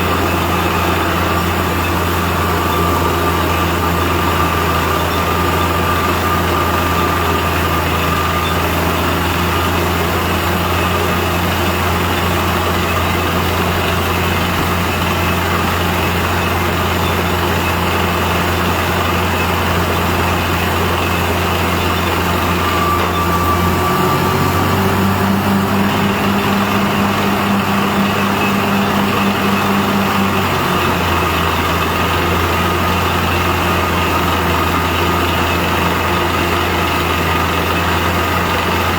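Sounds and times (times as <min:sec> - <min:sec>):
compressor humming: 0:00.0 - 0:34.3
higher steady tone: 0:20.8 - 0:30.2.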